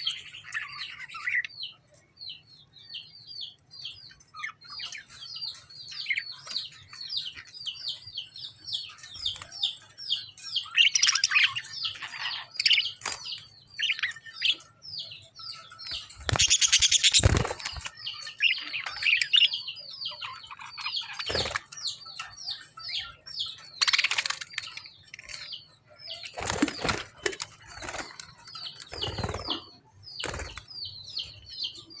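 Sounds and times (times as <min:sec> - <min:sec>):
lovebirds chirping: 0:00.0 - 0:32.0
wings flapping: 0:15.9 - 0:18.0, 0:21.2 - 0:21.8, 0:26.3 - 0:29.6, 0:30.2 - 0:30.7.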